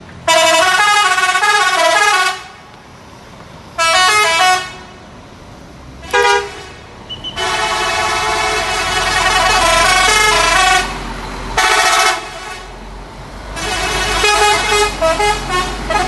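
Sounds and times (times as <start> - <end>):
musical bus air horn: 0.3 - 2.6, 3.8 - 5.0, 6.0 - 6.8, 7.4 - 11.0, 11.6 - 12.8, 13.6 - 16.0.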